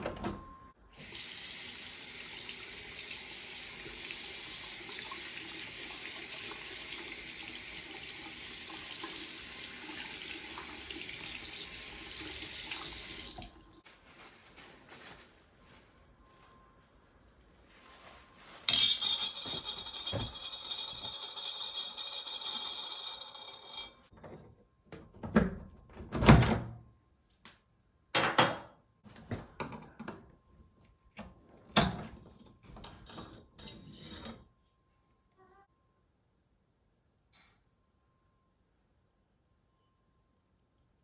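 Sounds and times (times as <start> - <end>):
metal knocks and clinks: 18.7 - 24.0.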